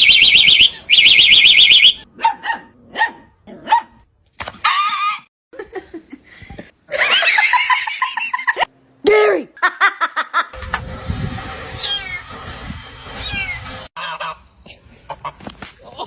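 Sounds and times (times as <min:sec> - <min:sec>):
dog barking and yipping: 0:02.2 - 0:04.0.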